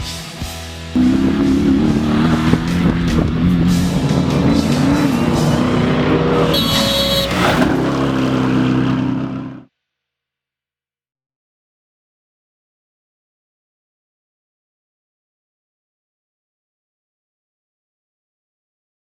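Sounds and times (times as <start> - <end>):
rock music: 0.5 - 7.4
truck engines revving: 1.0 - 9.7.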